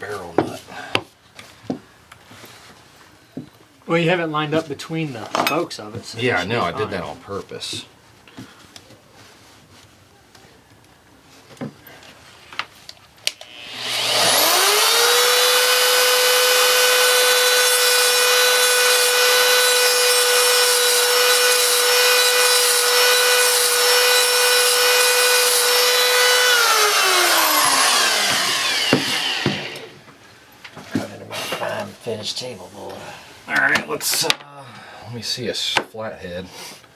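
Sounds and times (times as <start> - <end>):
rotary tool whining: 13.4 - 30.1.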